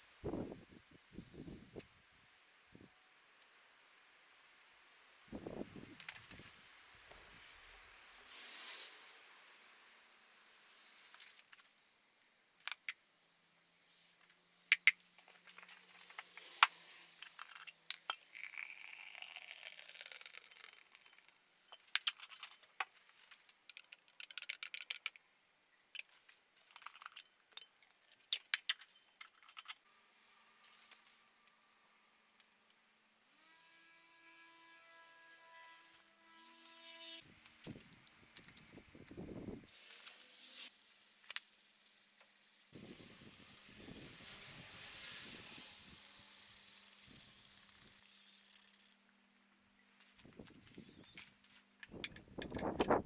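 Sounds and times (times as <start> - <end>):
small hard objects clicking: 14.7 - 16.4, 17.2 - 25.2, 26.0 - 29.8.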